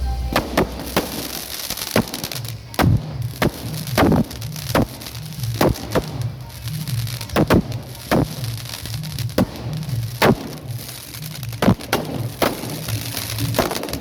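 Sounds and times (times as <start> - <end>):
firecrackers banging: 0.0 - 14.0
music with low beat: 0.0 - 14.0.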